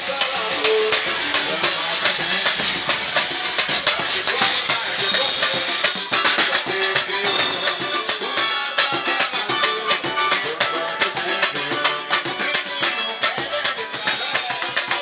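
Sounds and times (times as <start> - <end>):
music with drums and shakers: 0.0 - 15.0.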